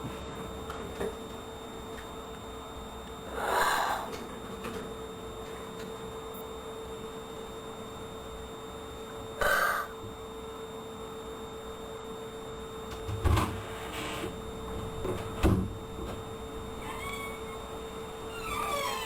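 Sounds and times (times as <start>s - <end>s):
electrical hum and hiss: 0.0s - 19.0s.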